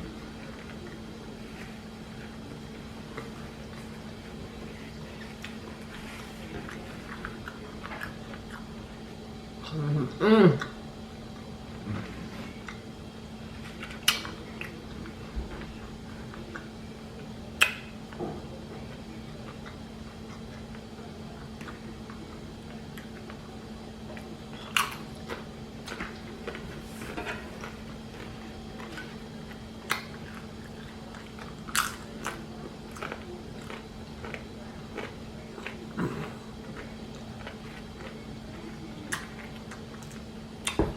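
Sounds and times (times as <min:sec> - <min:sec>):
person chewing: 0:24.5 - 0:40.8.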